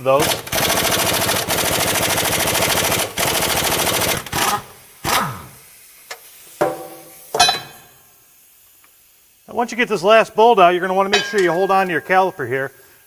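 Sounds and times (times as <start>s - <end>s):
impact wrench hammering: 6.6s - 8.0s, 11.1s - 12.1s.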